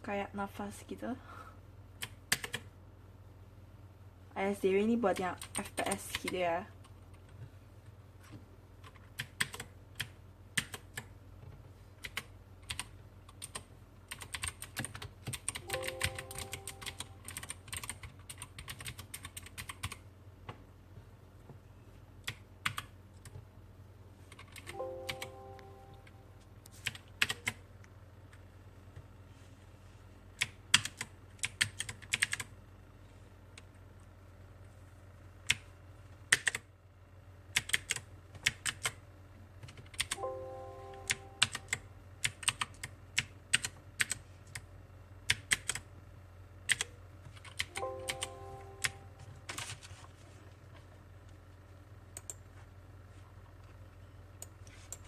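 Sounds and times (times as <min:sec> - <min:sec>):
mechanical keyboard keys clacking: 0:02.0 - 0:02.7, 0:08.8 - 0:11.1, 0:12.0 - 0:20.0, 0:24.3 - 0:25.4, 0:26.8 - 0:27.6, 0:30.4 - 0:32.5, 0:36.3 - 0:36.6, 0:37.6 - 0:39.0, 0:39.6 - 0:40.2, 0:41.0 - 0:44.2, 0:45.3 - 0:45.8, 0:46.7 - 0:49.8
brief tone: 0:15.6 - 0:17.2, 0:24.7 - 0:26.4, 0:40.2 - 0:41.8, 0:47.7 - 0:49.5.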